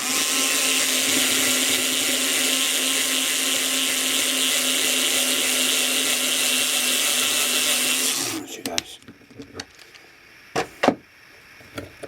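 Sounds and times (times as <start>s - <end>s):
electric drill motor: 0.0s - 8.8s
drill bit cutting hiss: 0.0s - 9.0s.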